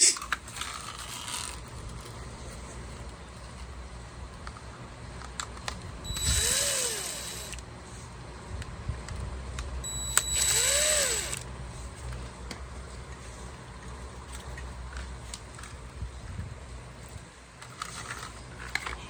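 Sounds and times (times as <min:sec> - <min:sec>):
cordless drill whining: 0:06.0 - 0:07.6, 0:09.8 - 0:11.4.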